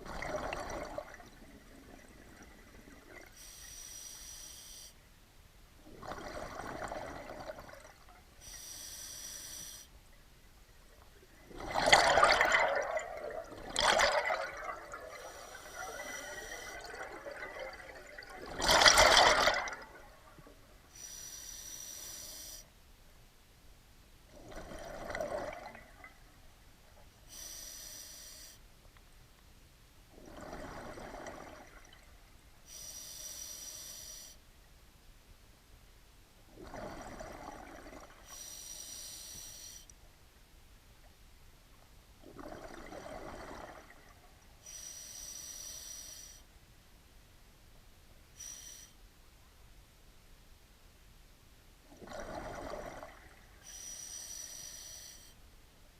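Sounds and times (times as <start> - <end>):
exhaled bubbles rushing: 0.0 - 3.3, 5.9 - 8.1, 11.4 - 20.4, 24.3 - 26.2, 42.2 - 44.2, 51.9 - 53.5
regulator hissing inhale: 3.4 - 5.0, 8.4 - 9.9, 20.9 - 22.7, 27.3 - 28.6, 32.7 - 34.4, 38.2 - 39.9, 44.6 - 46.5, 48.3 - 49.0, 53.6 - 55.4.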